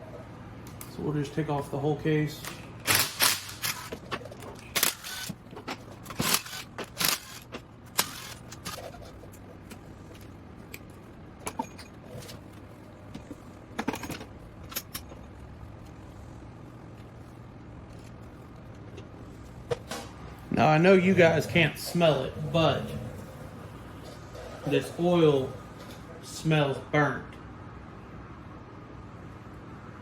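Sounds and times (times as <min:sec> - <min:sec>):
hand tools and metal parts clinking: 0:02.4 - 0:15.3.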